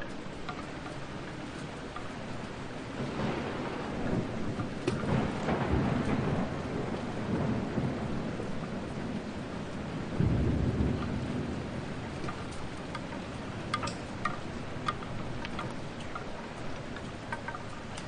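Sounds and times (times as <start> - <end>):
steady rain: 0.0 - 18.0
rolling thunder: 2.6 - 15.9
sharp drips: 8.5 - 18.0.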